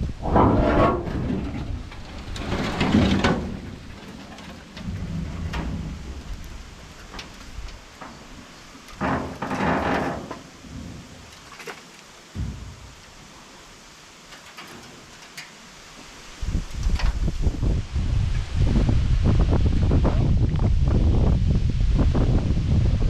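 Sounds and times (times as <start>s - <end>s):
metal scraping: 0.0s - 8.2s, 9.0s - 11.3s
wind rumbling on microphone: 0.0s - 11.5s, 12.3s - 13.8s, 15.8s - 23.0s.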